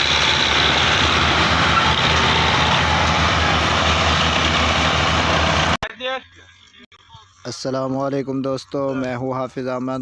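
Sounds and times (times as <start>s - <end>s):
tractor diesel engine under load: 0.0s - 5.8s.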